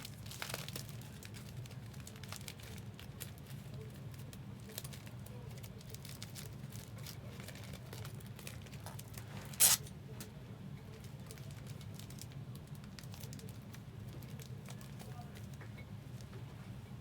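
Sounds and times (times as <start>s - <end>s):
foil wrappers crinkling: 0.0s - 9.8s, 10.9s - 15.6s
loud tearing rasp: 9.6s - 9.8s.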